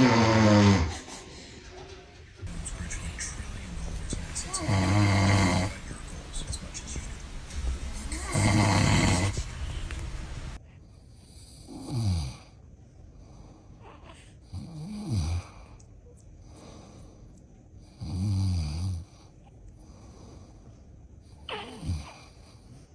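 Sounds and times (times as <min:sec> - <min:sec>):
man snoring loudly: 0:00.0 - 0:01.1, 0:02.5 - 0:10.6.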